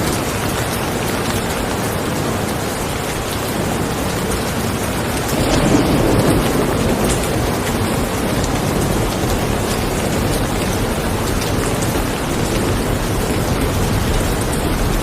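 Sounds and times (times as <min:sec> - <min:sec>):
steady rain falling: 0:00.0 - 0:15.0
low rumble of thunder: 0:03.7 - 0:15.0.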